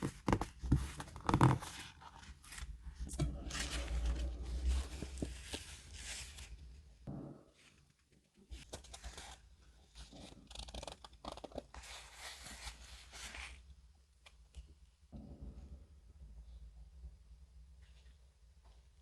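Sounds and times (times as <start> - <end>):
paper rustling and scraping: 0.0 - 6.9, 8.5 - 13.6.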